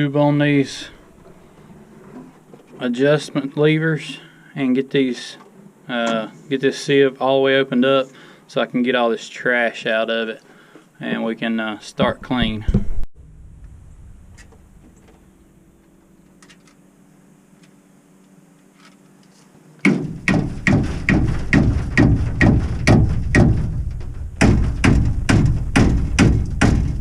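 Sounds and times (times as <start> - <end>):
faint steady hum: 0.0 - 27.0
hammer striking metal: 19.8 - 27.0.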